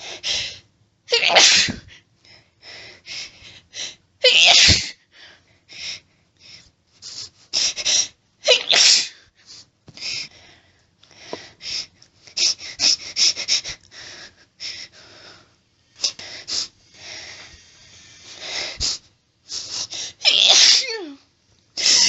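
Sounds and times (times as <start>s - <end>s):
breathy sneeze burst: 1.1s - 1.9s, 4.2s - 5.0s, 8.5s - 9.2s, 20.2s - 21.2s
sniffs: 6.4s - 8.1s, 18.3s - 20.2s
woman's hitching breaths: 9.2s - 20.2s.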